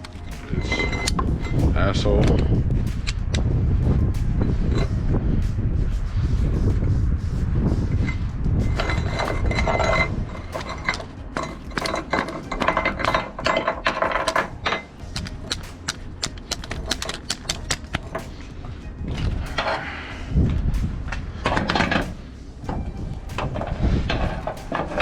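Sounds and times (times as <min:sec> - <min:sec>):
metal ratchet and hooks clicking: 0:00.0 - 0:03.5, 0:08.7 - 0:25.0
wind rumbling on microphone: 0:00.0 - 0:25.0.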